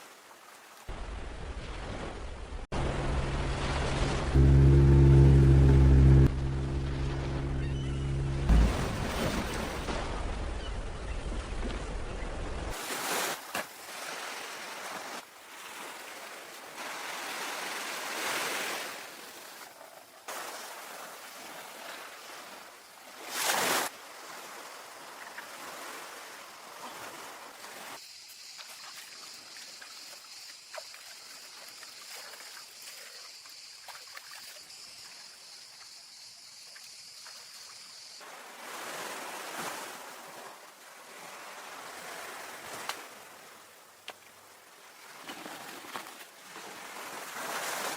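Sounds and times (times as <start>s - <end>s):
sea waves on a beach: 0.0s - 47.9s
high-pitched buzz: 4.3s - 9.9s.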